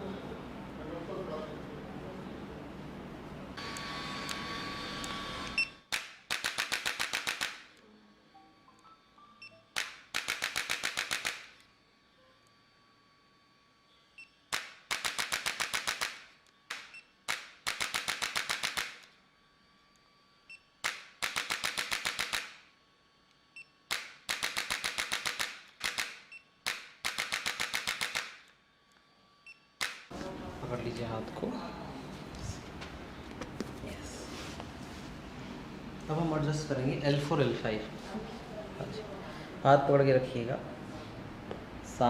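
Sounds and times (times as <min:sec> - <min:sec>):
bursts of rapid sharp clicks: 0:05.9 - 0:07.7, 0:09.8 - 0:11.6, 0:14.5 - 0:19.1, 0:20.8 - 0:22.6, 0:23.9 - 0:28.5, 0:29.8 - 0:30.1.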